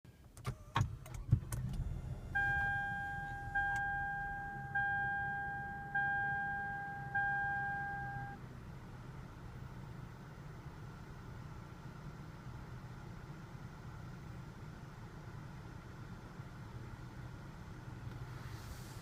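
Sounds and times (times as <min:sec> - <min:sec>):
low steady rumble: 0:00.1 - 0:19.0
car warning chime dinging: 0:02.3 - 0:08.4.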